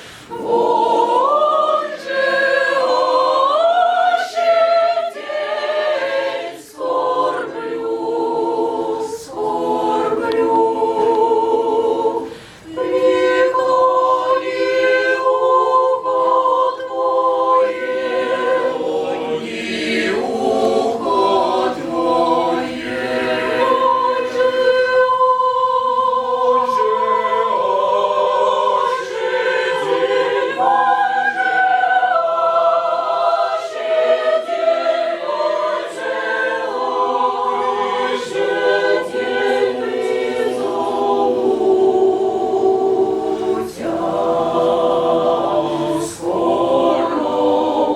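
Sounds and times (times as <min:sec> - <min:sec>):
singers breathing: 0:00.0 - 0:00.4, 0:12.2 - 0:12.7
choir singing a cappella: 0:00.0 - 0:47.9.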